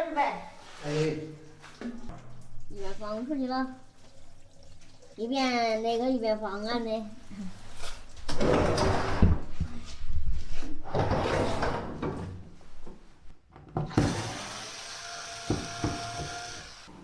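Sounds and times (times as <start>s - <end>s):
clattering and rattling of washing machine: 8.3s - 9.5s, 10.9s - 12.4s.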